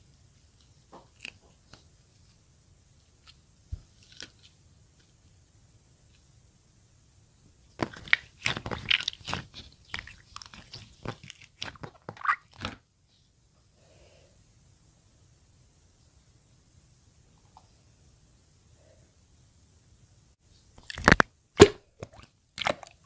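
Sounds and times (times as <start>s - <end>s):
crisp crunching and crackling: 7.8s - 12.8s.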